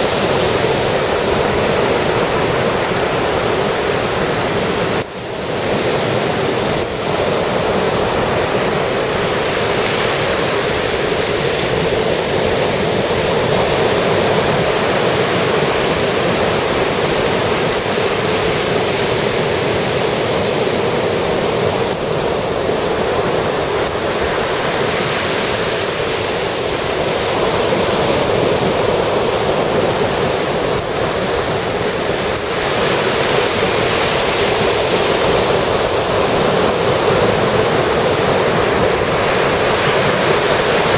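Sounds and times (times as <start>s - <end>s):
ocean surf on sandy beach: 0.0s - 40.9s.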